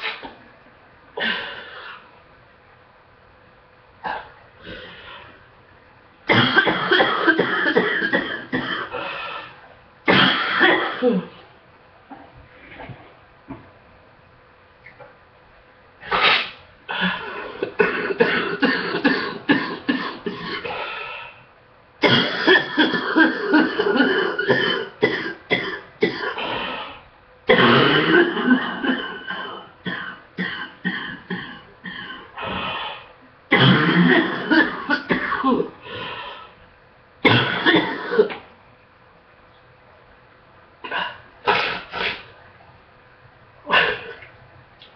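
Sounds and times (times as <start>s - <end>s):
person coughing in fits: 6.3s - 9.1s, 10.1s - 11.4s, 16.1s - 20.8s, 22.0s - 26.6s, 27.5s - 32.4s, 33.5s - 35.8s, 37.2s - 38.5s, 40.8s - 42.3s, 43.7s - 44.3s.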